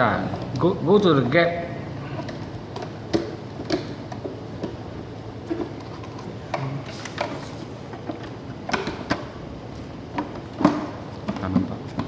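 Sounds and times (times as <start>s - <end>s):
plastic parts clicking and knocking: 2.2s - 4.8s.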